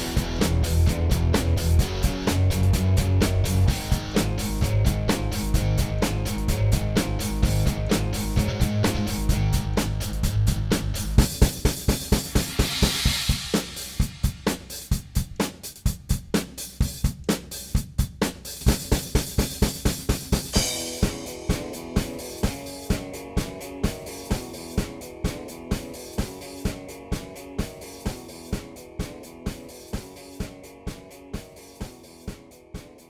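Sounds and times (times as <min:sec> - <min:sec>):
rock music with drum beat: 0:00.0 - 0:33.0
cymbal washes: 0:11.5 - 0:15.0, 0:20.4 - 0:26.8.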